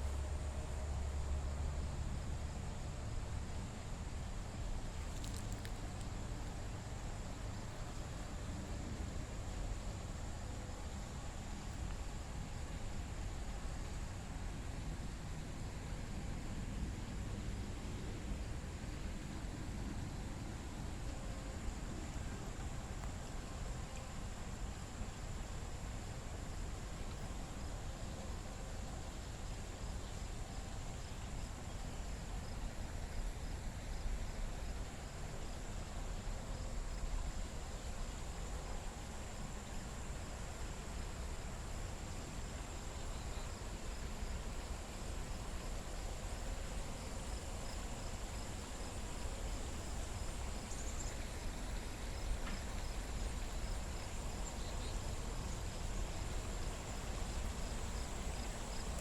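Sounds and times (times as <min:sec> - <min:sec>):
insects buzzing: 0:03.8 - 0:59.0
faint pulsing chirp: 0:46.3 - 0:59.0.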